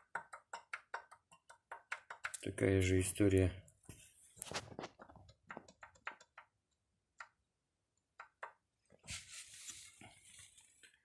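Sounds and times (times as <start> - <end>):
clicks and taps of engine parts: 0.0 - 2.4.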